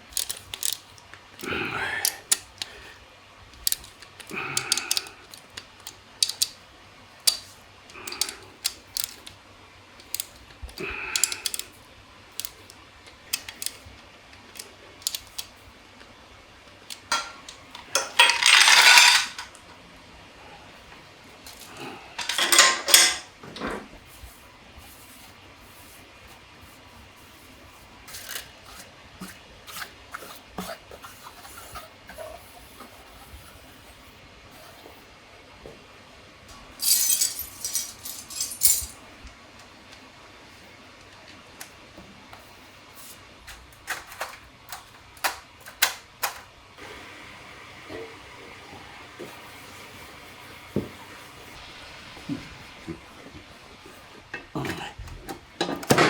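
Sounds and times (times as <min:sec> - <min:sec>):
metal parts and tools clinking: 0:00.0 - 0:01.0, 0:03.6 - 0:06.6, 0:07.2 - 0:09.4, 0:10.0 - 0:10.4, 0:11.1 - 0:11.7, 0:16.9 - 0:19.5, 0:21.5 - 0:23.3, 0:36.8 - 0:39.0.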